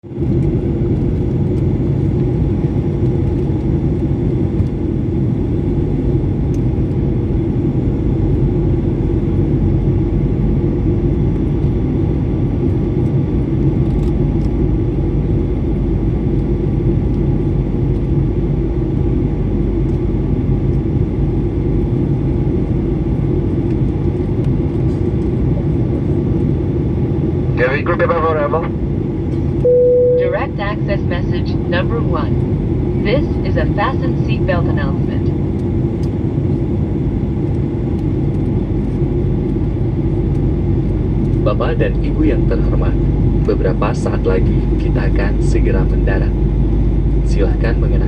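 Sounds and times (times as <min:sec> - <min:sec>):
airliner engine noise: 0:00.0 - 0:48.0
faint steady tone: 0:29.6 - 0:30.6.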